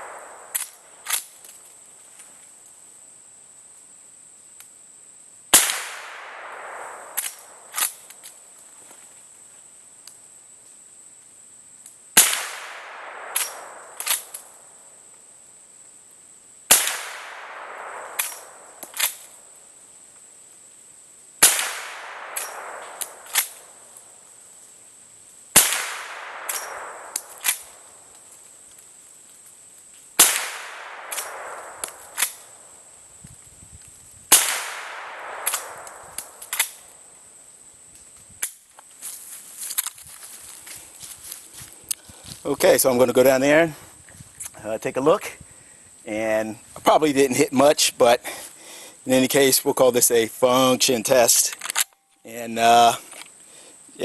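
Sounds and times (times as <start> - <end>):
rifle shots echoing: 0.0 - 1.3, 5.5 - 8.3, 12.2 - 15.0, 16.7 - 19.6, 21.4 - 24.2, 25.5 - 28.3, 30.2 - 32.9, 34.3 - 37.1
rifle lever clicks: 51.5 - 52.0.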